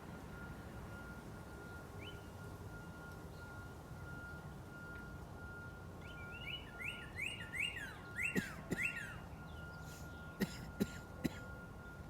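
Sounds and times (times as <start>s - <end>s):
cardinal singing whistled notes: 6.0s - 10.0s.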